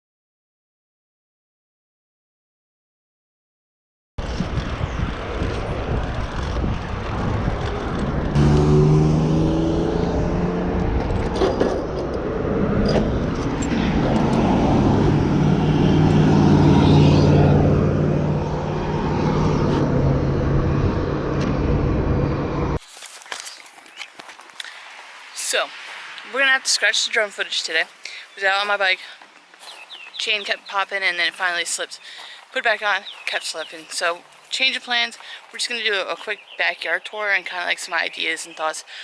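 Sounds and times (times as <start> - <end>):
vehicle engine running: 4.2 - 22.8
wind rumble on microphone: 4.2 - 22.8.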